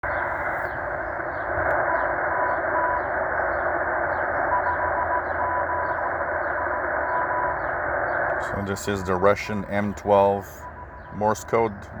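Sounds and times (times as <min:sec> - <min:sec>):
shortwave static hiss: 0:00.0 - 0:12.0
morse code beeps: 0:04.4 - 0:07.6, 0:08.3 - 0:12.0.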